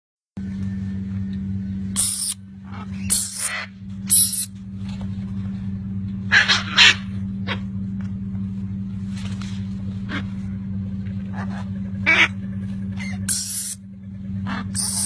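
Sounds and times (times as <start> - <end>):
steady low hum: 0.4 - 15.0
parrot squawking: 2.0 - 4.5, 6.3 - 7.0, 13.0 - 13.8, 14.4 - 15.0.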